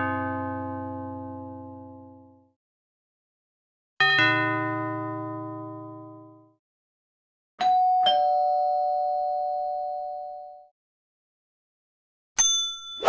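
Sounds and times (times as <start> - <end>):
two-tone doorbell chime: 7.6 - 10.7.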